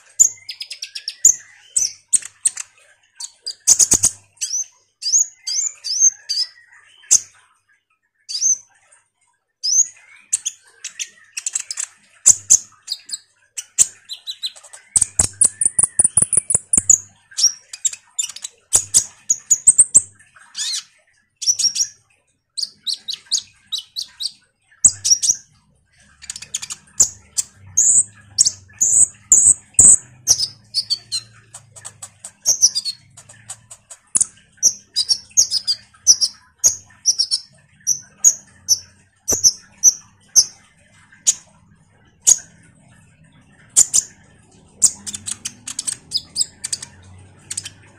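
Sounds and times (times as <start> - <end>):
sunbird chattering song: 9.6 - 20.0, 26.2 - 40.6, 44.8 - 47.7
faint low hum: 24.7 - 47.9.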